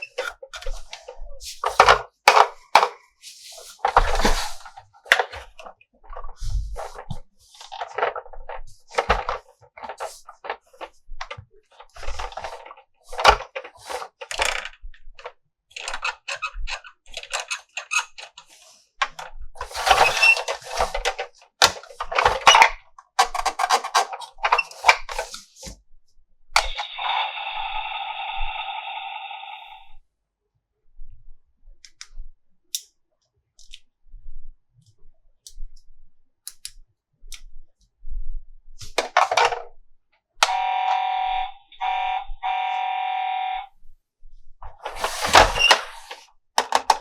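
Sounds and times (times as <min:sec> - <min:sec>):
toy parts clicking and tapping: 0:11.2 - 0:19.2, 0:36.5 - 0:37.4.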